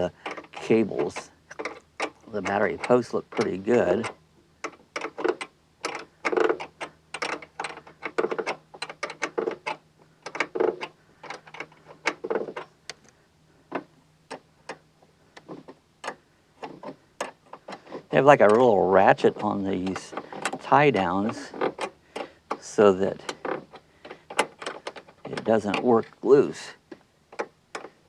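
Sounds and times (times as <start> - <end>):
ratchet clicking: 0.2 - 13.1.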